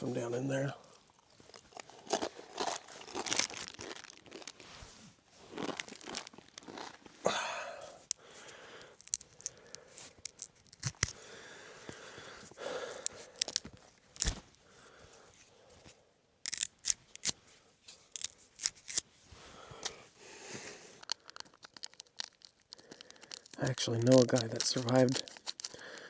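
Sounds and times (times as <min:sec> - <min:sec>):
dry noodles snapping and crunching: 0:01.2 - 0:04.6, 0:05.5 - 0:07.1, 0:07.8 - 0:11.3, 0:12.6 - 0:14.6, 0:16.4 - 0:17.4, 0:18.0 - 0:19.0, 0:21.0 - 0:26.0.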